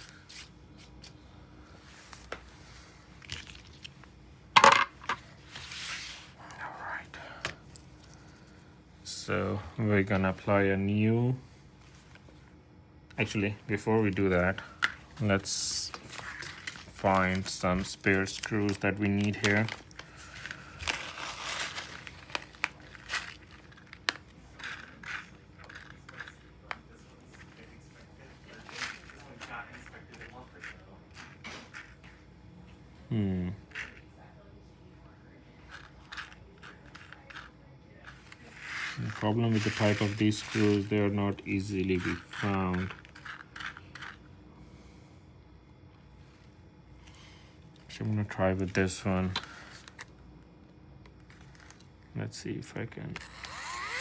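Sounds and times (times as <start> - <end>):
rustling of small parts: 1.8 - 7.0, 13.2 - 32.2, 35.7 - 44.3, 51.2 - 51.9
clatter of hard objects: 4.6 - 5.3.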